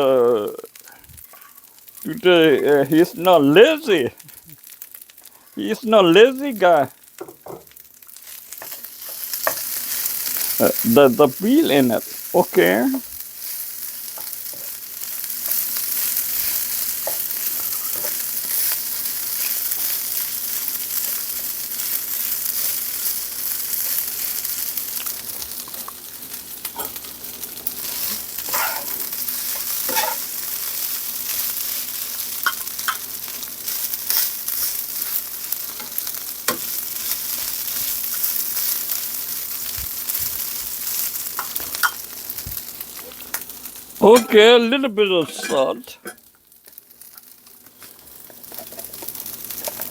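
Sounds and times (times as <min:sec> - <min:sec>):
rice sizzling in a pan: 0:00.0 - 0:49.9
utensil scraping a pan: 0:27.8 - 0:30.3.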